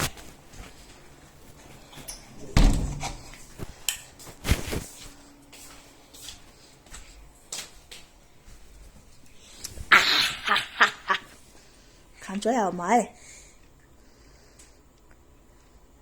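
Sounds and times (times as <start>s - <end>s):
heavy thumps: 2.5s - 3.6s.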